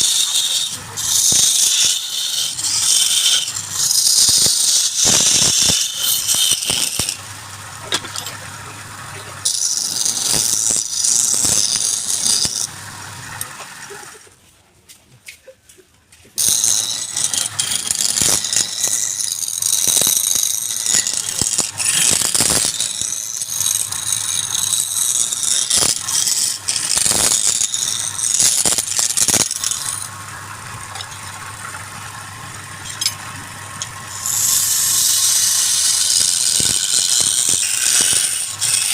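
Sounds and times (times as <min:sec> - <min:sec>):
lathe tool scraping wood: 0:00.0 - 0:14.1, 0:16.4 - 0:38.9
lathe motor hum: 0:00.0 - 0:14.2, 0:16.4 - 0:38.9.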